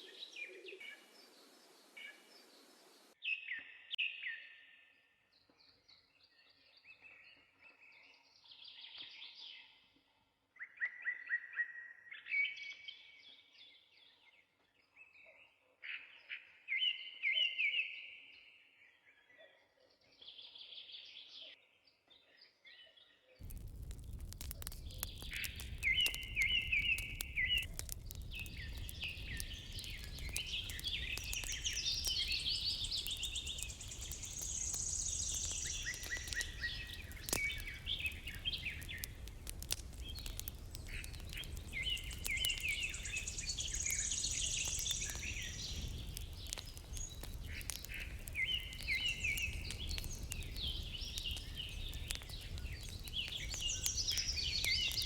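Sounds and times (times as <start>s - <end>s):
songbirds chirping and trilling: 12.3s - 55.0s
faint clicks: 23.4s - 55.0s.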